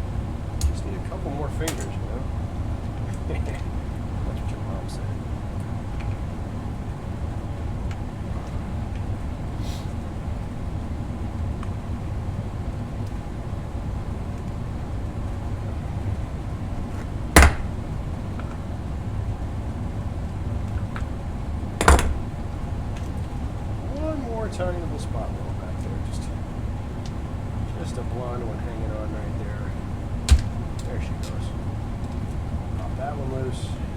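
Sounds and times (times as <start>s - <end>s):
low furnace hum: 0.0s - 33.9s.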